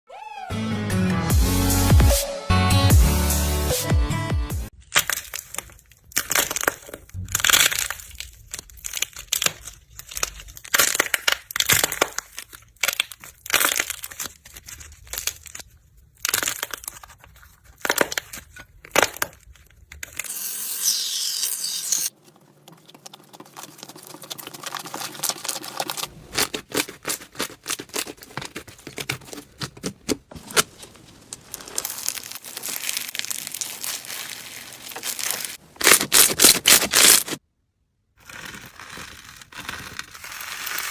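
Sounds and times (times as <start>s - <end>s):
slime crackling and popping: 4.8s - 20.3s, 22.1s - 37.4s.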